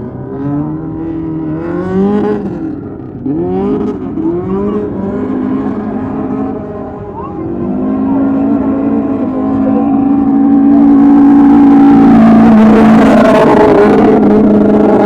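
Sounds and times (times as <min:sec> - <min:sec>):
car engine revving hard: 0:00.0 - 0:15.0.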